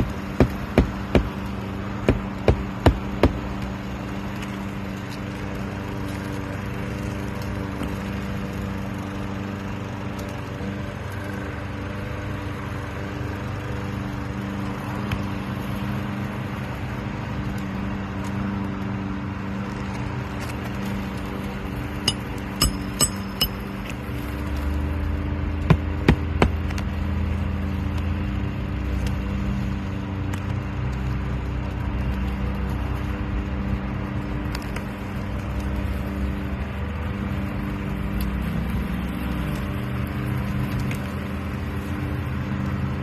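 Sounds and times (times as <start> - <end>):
hammer striking roofing nails: 0.0 - 1.4, 2.1 - 3.5, 22.1 - 23.6, 25.7 - 26.6
engine hum: 0.0 - 43.0.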